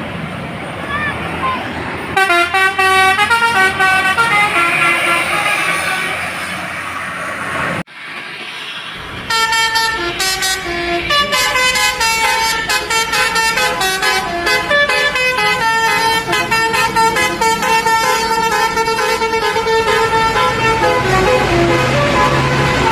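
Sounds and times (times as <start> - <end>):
bus multi-tone horn melody: 2.1 - 6.8, 9.3 - 22.9.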